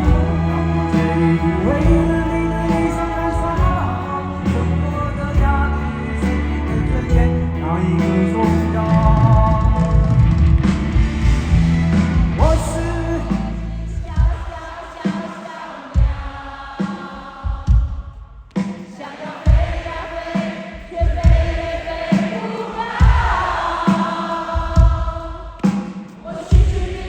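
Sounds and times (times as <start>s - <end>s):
drum beat: 0.0s - 2.4s, 8.9s - 27.0s
voices singing: 0.0s - 10.0s, 12.4s - 27.0s
live rock band playing ballad: 0.0s - 14.5s.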